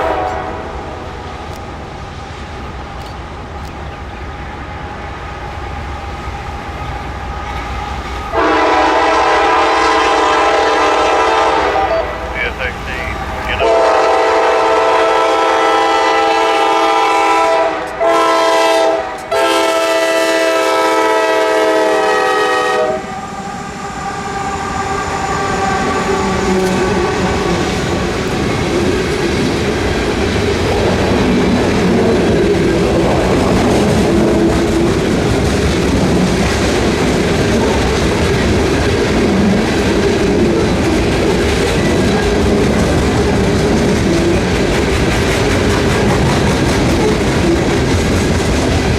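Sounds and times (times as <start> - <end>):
locomotive horn blasts: 0.0 - 0.8, 8.3 - 23.1
freight train rumbling past: 0.0 - 48.9.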